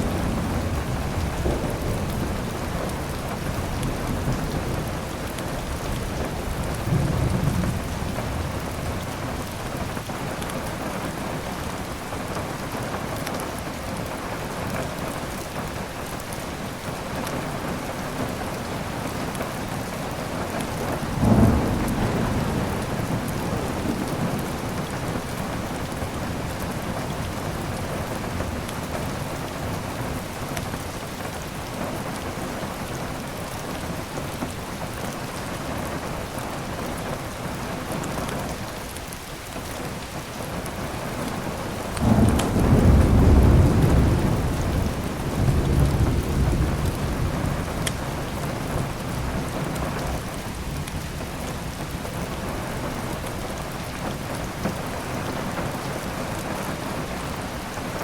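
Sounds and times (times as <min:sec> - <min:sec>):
thunder rumble: 0:00.0 - 0:10.0, 0:20.7 - 0:30.3, 0:41.6 - 0:51.2
heavy rain: 0:00.0 - 0:58.0.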